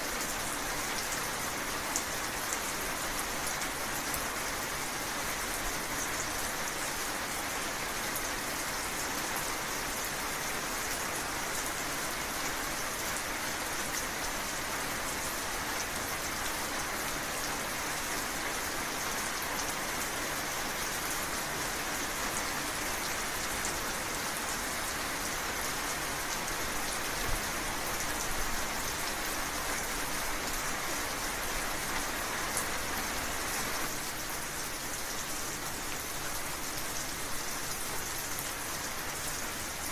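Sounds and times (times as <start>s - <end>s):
rain on hard surfaces: 0.0s - 39.9s.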